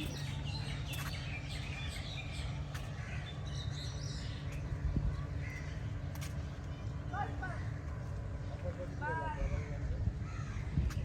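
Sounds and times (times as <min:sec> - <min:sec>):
small birds chirping: 0:00.0 - 0:09.7
crows cawing: 0:09.5 - 0:10.8.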